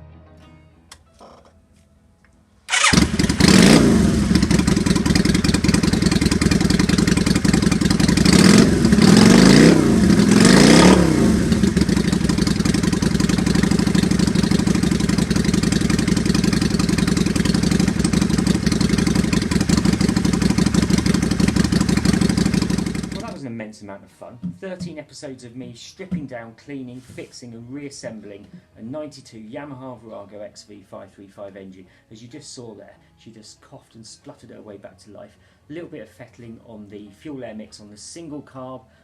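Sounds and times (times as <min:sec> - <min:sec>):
motorcycle engine revving and idling: 0:02.7 - 0:23.4.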